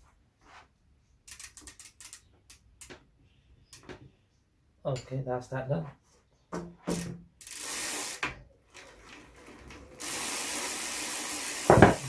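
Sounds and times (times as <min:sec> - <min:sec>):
bike freewheel ratcheting: 0:01.3 - 0:02.9, 0:06.9 - 0:12.0.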